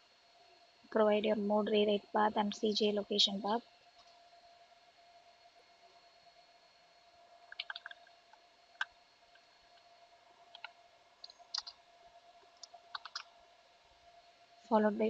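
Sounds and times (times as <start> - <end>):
faint steady hum: 0.0 - 15.0
keyboard keys clicking: 7.5 - 8.0, 10.5 - 11.8, 12.6 - 13.3.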